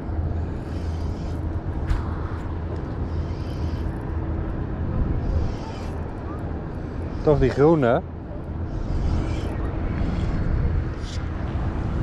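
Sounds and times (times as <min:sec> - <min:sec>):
faint steady hum: 0:00.0 - 0:12.0
low engine-like rumble: 0:00.0 - 0:12.0.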